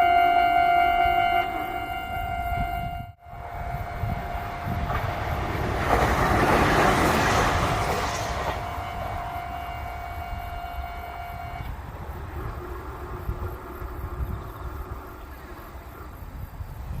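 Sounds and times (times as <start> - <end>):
level crossing warning bell: 0.0 - 11.7
train rumble: 0.0 - 17.0.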